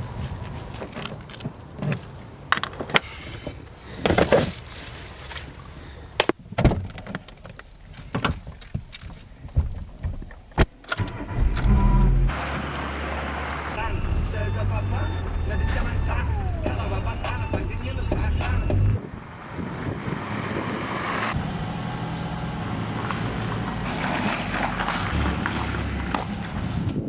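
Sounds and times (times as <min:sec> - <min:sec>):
low engine hum: 0:11.0 - 0:27.0.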